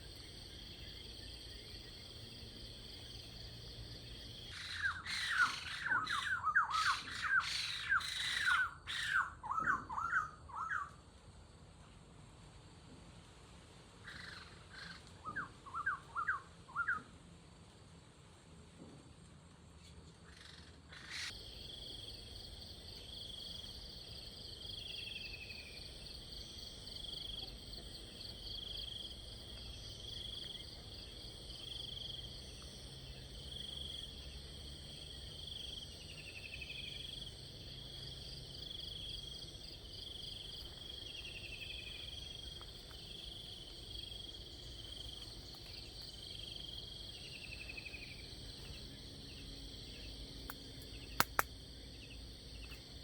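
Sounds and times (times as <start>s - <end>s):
insects chirping in pulsed trills: 0.0s - 9.2s, 21.1s - 53.0s
sharp click: 50.5s - 51.5s.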